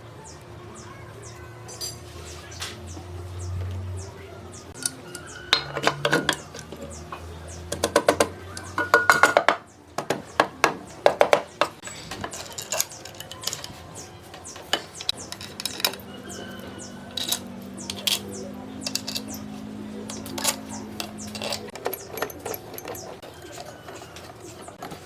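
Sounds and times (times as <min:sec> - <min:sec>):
metallic clicking and clinking: 0:11.3 - 0:19.5, 0:20.1 - 0:24.3.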